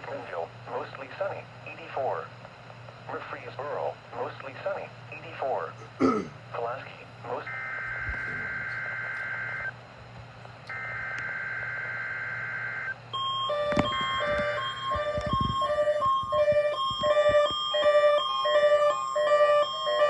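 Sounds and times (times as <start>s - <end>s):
buzzy data tone: 7.5s - 9.7s, 10.7s - 20.0s.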